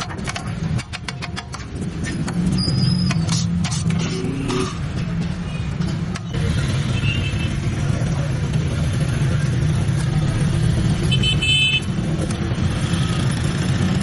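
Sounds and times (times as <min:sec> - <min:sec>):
street traffic rumble: 0:00.0 - 0:14.0.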